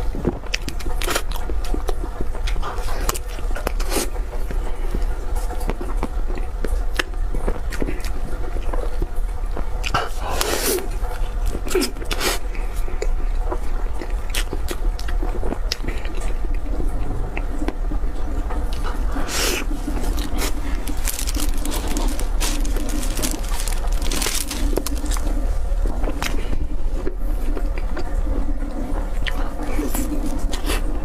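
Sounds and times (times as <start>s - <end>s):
person chewing: 0.5s - 4.1s, 9.8s - 16.6s, 18.8s - 27.8s.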